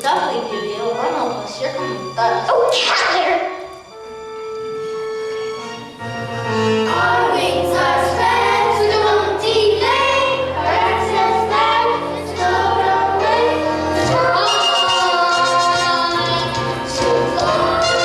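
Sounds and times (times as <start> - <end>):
instrumental accompaniment: 0.0 - 18.0
voices singing together: 6.9 - 18.0.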